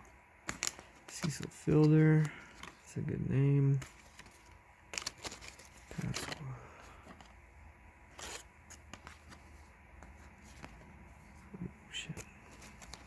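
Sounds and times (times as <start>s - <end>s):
paper cards sliding and flicking: 0.4s - 2.9s, 8.1s - 13.0s.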